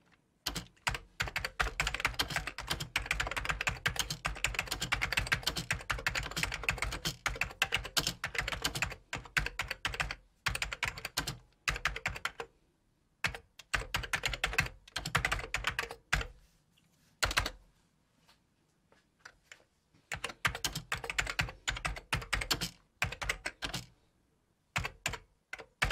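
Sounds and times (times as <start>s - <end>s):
computer keyboard typing: 0.4s - 12.5s, 13.2s - 16.3s, 17.2s - 17.6s, 20.1s - 23.9s, 24.8s - 25.9s.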